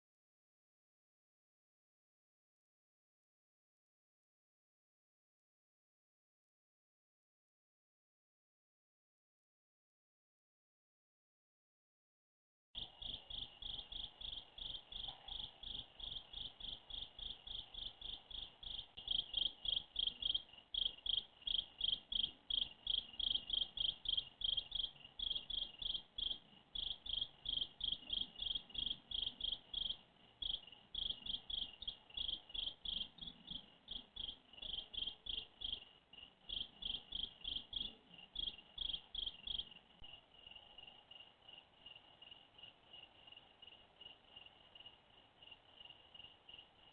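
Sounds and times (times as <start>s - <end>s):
faint steady insect trill: 12.8s - 46.9s
insect chirping: 12.8s - 46.9s.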